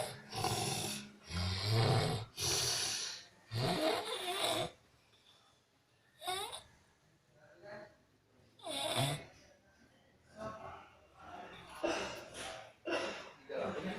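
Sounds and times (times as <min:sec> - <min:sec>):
person snoring: 0:00.0 - 0:04.8, 0:06.2 - 0:06.6, 0:08.6 - 0:09.2.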